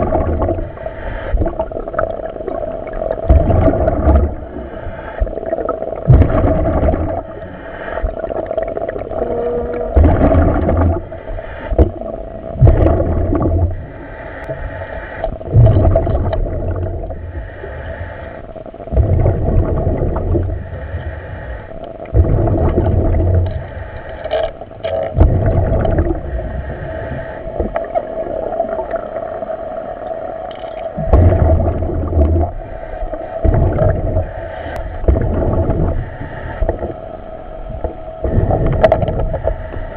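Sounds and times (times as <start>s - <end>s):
exhaust bubbles rushing: 0.0s - 0.7s, 1.4s - 4.6s, 5.4s - 7.3s, 9.9s - 11.1s, 12.6s - 13.8s, 15.5s - 17.1s, 18.9s - 20.6s, 22.1s - 23.5s, 25.2s - 26.3s, 31.0s - 32.6s, 33.4s - 34.3s, 35.0s - 36.1s
diver breathing underwater: 0.0s - 1.7s, 3.3s - 29.1s, 31.0s - 39.9s
steady hum: 0.0s - 39.9s.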